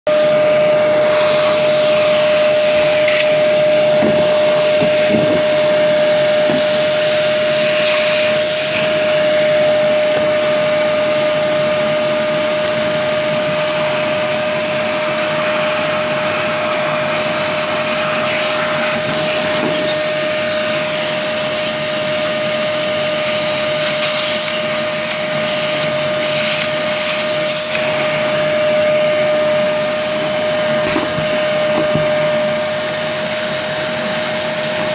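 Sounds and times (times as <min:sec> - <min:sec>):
vacuum cleaner whining: 0:00.1 - 0:34.9.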